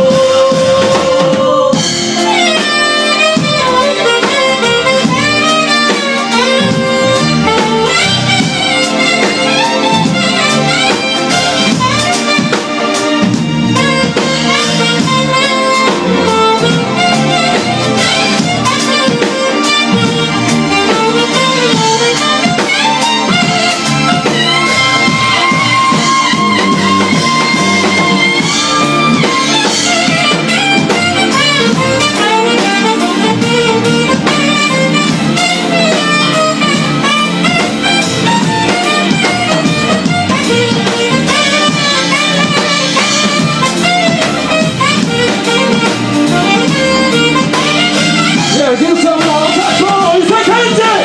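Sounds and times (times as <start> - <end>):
instrumental ensemble music: 0.0 - 51.0.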